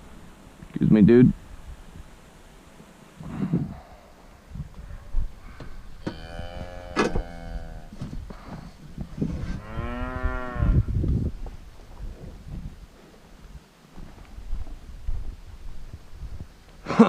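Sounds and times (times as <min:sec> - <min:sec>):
cattle mooing: 0:06.0 - 0:08.0, 0:09.6 - 0:10.8.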